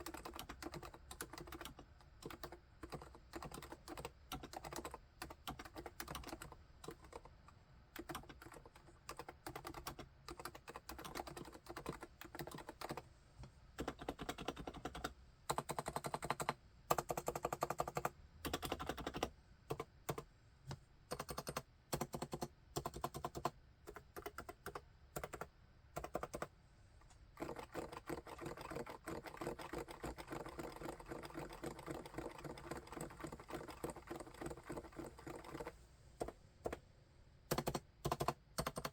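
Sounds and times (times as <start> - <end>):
keyboard typing: 0.0 - 7.3, 8.0 - 13.0, 13.8 - 26.5, 27.4 - 36.8, 37.5 - 38.9.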